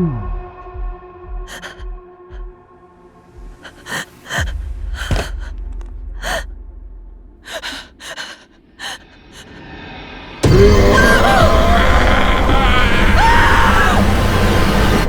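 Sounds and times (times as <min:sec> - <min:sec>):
woman gasping and panting: 0:01.5 - 0:02.5, 0:03.6 - 0:06.5, 0:07.4 - 0:09.6
low rumble: 0:03.4 - 0:15.0.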